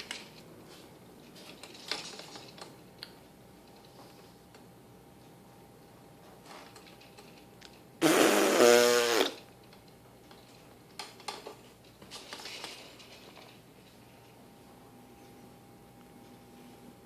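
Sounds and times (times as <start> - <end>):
baby blowing a raspberry: 8.0 - 9.4.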